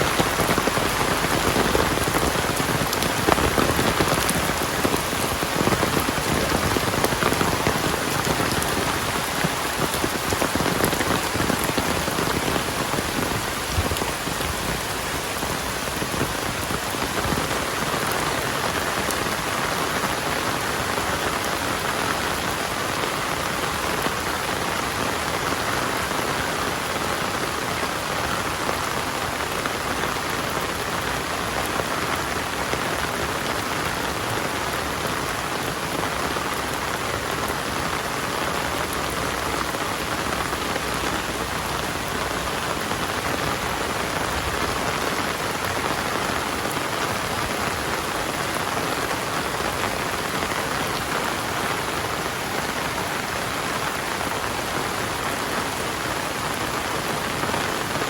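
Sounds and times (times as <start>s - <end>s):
heavy rain hissing: 0.0s - 58.0s.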